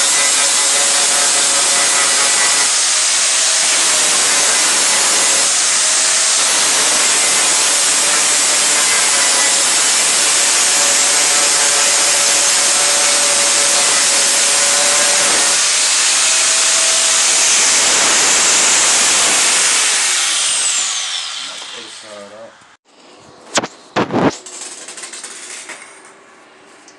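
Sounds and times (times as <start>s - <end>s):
power tool running under load: 0.0s - 22.4s.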